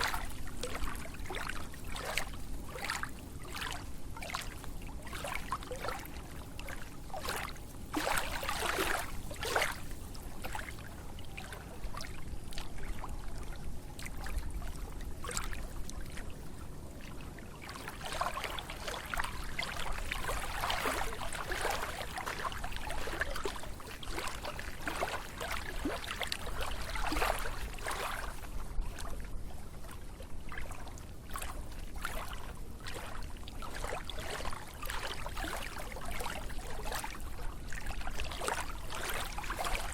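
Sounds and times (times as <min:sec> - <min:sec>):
water splashing and trickling: 0:00.0 - 0:39.9.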